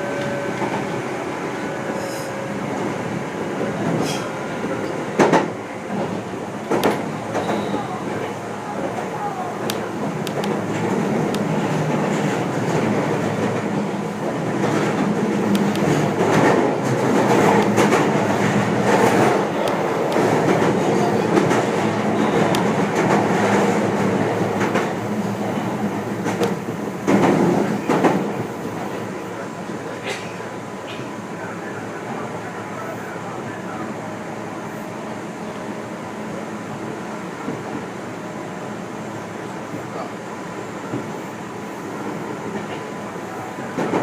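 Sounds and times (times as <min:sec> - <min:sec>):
train wheels rumbling on rail: 0:00.0 - 0:44.0
sharp rail clicks: 0:06.7 - 0:07.5, 0:09.6 - 0:11.6, 0:14.6 - 0:21.8.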